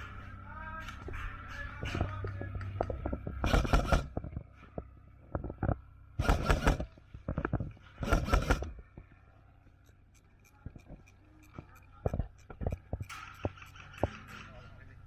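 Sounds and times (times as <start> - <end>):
scraping noise bursts: 0.0 - 8.8.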